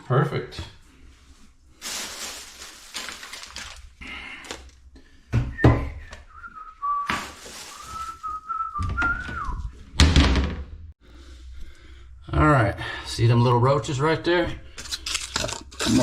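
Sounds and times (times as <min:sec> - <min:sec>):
person whistling: 0:05.5 - 0:09.7
handling thumps and rustling: 0:07.0 - 0:10.7.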